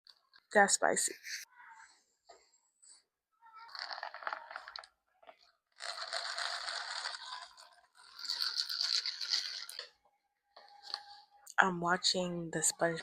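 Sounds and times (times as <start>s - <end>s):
food crunching and rustling: 3.6s - 10.0s.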